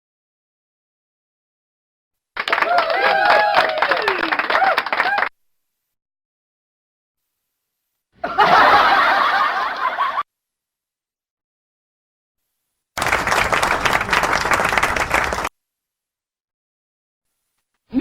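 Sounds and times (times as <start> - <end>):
crowd applauding: 2.4 - 5.3, 13.0 - 15.5
group laughing: 8.2 - 10.2.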